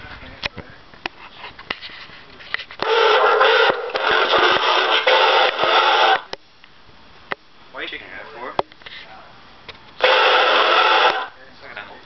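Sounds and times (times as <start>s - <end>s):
harsh yelling cry through amplifier: 2.8s - 6.3s, 10.0s - 11.3s.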